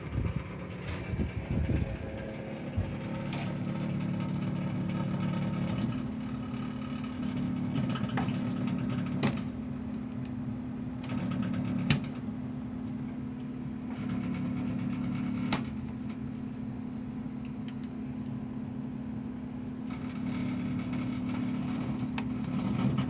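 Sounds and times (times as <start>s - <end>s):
compressor humming and rattling: 0.0s - 23.0s.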